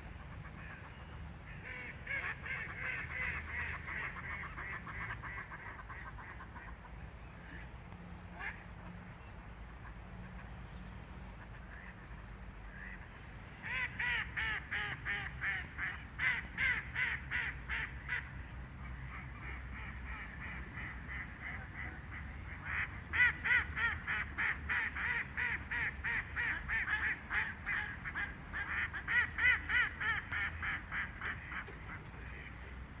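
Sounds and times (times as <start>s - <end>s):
ducks quacking: 0.4s - 6.9s.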